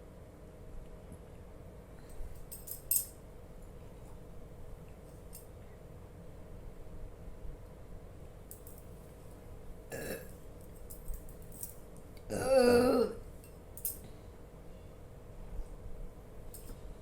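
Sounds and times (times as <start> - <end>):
woman burping: 9.9 - 10.4, 12.3 - 13.2.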